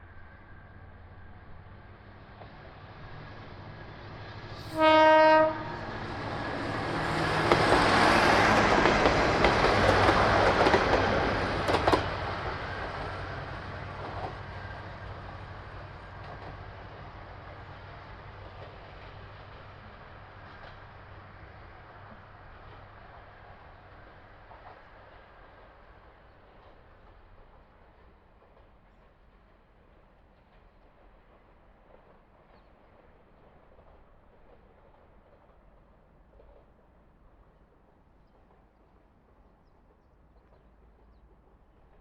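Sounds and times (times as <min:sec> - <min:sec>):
railcar passing by: 0:00.0 - 0:42.0
train horn blast: 0:04.6 - 0:06.0.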